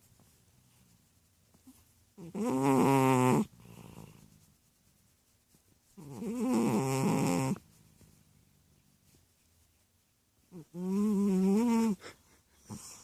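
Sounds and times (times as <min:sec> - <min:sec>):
cat snoring: 0:02.2 - 0:04.1, 0:06.0 - 0:07.6, 0:10.6 - 0:12.0
cat soft breath: 0:11.8 - 0:13.0.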